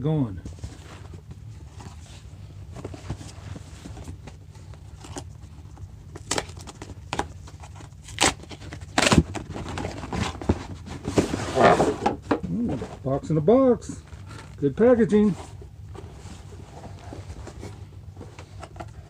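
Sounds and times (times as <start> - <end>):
cardboard box rustling and scraping: 0.5 - 5.2, 9.0 - 13.1, 14.0 - 19.0
cardboard ripping: 6.2 - 12.7.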